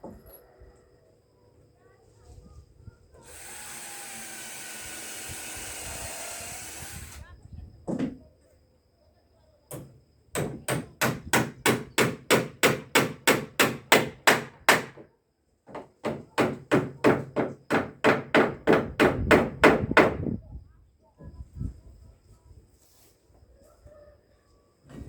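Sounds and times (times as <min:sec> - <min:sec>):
hammer striking wood: 0:09.7 - 0:15.0, 0:15.7 - 0:20.2.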